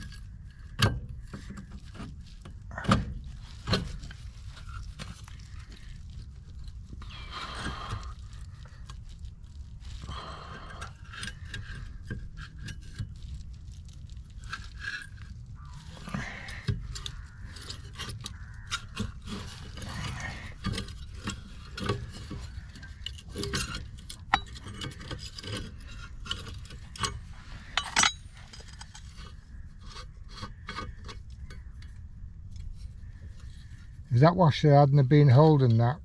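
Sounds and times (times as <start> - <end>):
metal clinks and scrapes: 10.6 - 15.4, 16.0 - 31.4.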